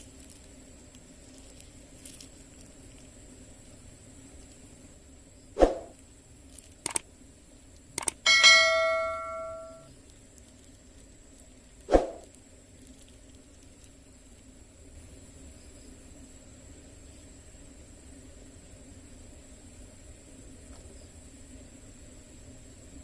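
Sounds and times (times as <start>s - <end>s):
sharp clicks: 6.8s - 7.1s, 8.0s - 8.2s
small metal bell ringing: 8.3s - 9.9s.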